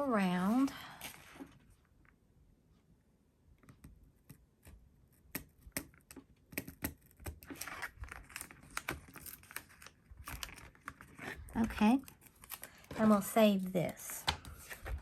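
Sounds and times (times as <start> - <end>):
paper rustling: 7.4 - 15.0.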